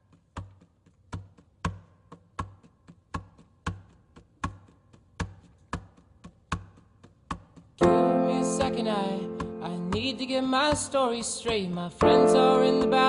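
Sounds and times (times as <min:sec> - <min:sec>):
rhythmic tapping with low thump: 0:07.3 - 0:13.0.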